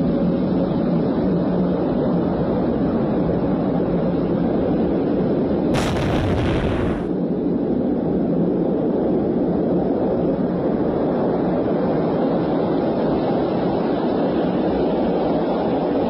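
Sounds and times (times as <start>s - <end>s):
explosion blast: 5.8s - 7.2s
steady low rumble: 5.8s - 7.4s.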